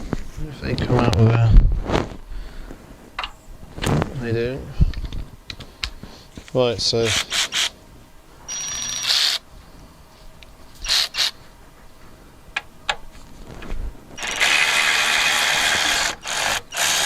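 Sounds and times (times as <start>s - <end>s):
electric ratchet driving screws: 7.0s - 7.7s, 8.5s - 9.4s, 10.8s - 11.4s, 14.2s - 17.0s.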